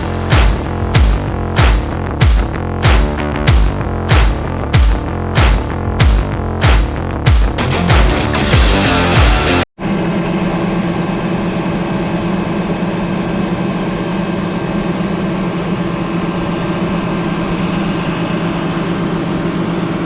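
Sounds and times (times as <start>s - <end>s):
large engine humming: 0.0s - 6.8s.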